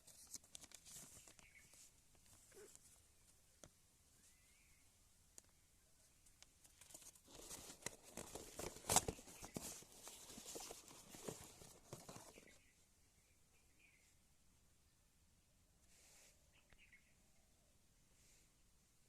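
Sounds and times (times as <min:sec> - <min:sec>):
packaging rustling and crinkling: 0:00.0 - 0:03.0, 0:06.6 - 0:12.6.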